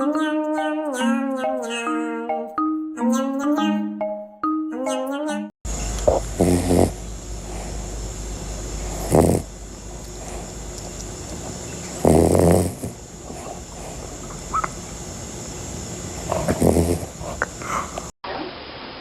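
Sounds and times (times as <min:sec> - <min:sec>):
dog snoring: 0:06.0 - 0:07.8, 0:08.8 - 0:09.5, 0:11.9 - 0:14.1, 0:16.2 - 0:17.5.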